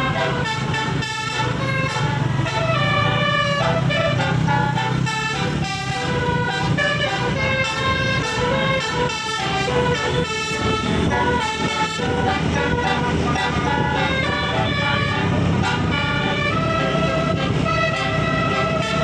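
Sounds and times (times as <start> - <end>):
bus engine hum: 0.0 - 19.0
multi-tone air horn tune: 0.0 - 19.0.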